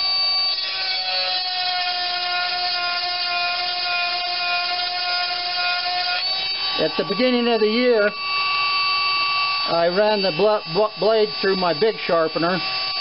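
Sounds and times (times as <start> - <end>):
chain sharpener grinding whine: 0.0 - 13.0.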